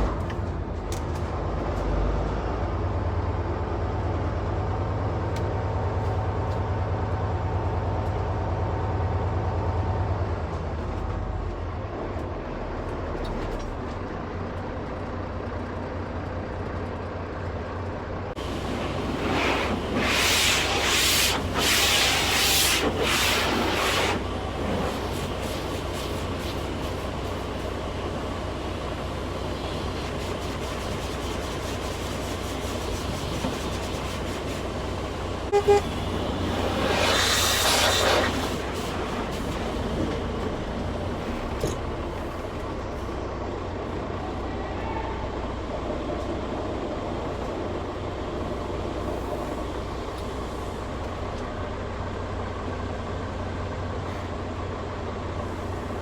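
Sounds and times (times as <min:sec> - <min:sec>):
engine rumbling: 0:00.0 - 0:56.0
loud hissing bursts: 0:18.4 - 0:27.8, 0:29.6 - 0:39.8.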